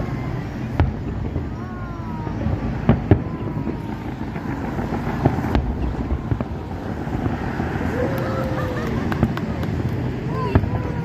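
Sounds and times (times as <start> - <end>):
distant fireworks bangs: 0.0 - 11.0
traffic rumble: 0.0 - 11.0
wind: 0.0 - 11.0.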